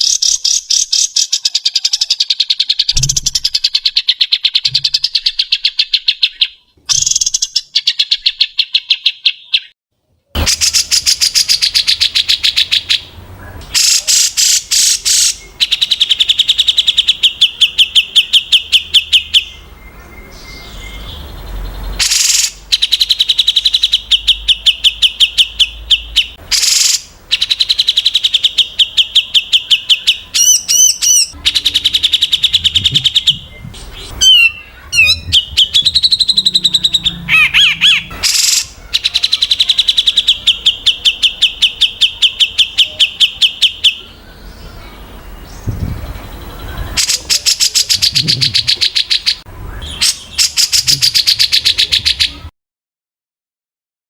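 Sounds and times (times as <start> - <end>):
songbird trilling: 10.4 - 52.5
bird whistles and chatter: 21.9 - 52.5.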